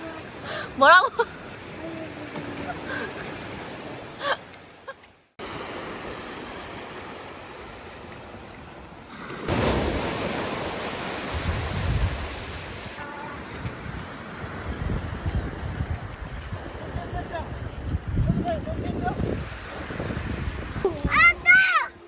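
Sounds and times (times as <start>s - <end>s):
sea surf washing: 0.0s - 22.0s
wind buffeting microphone: 11.2s - 22.0s.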